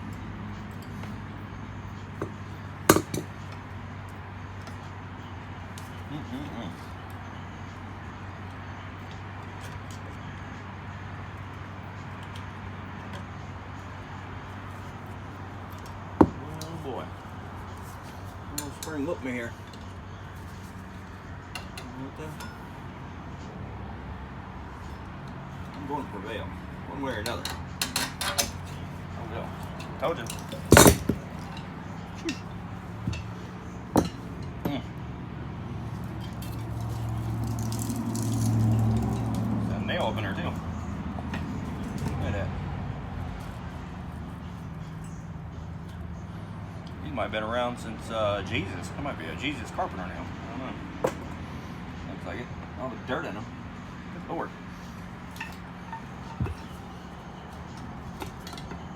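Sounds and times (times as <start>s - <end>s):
metal tools clinking: 2.2s - 3.6s, 17.7s - 20.8s, 27.1s - 34.8s, 54.7s - 58.9s
faint clicks of metal parts: 27.2s - 28.9s.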